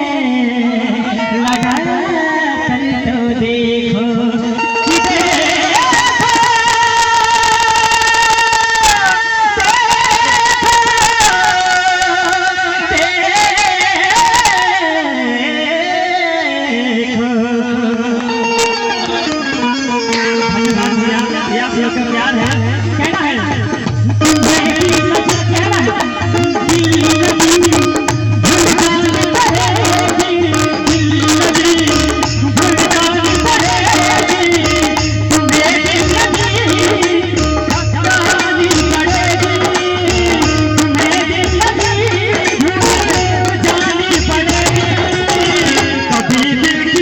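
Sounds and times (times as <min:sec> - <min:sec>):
instrumental accompaniment: 0:00.0 - 0:47.0
percussion strikes: 0:01.2 - 0:15.1, 0:18.0 - 0:47.0
ornamented melody: 0:17.2 - 0:47.0.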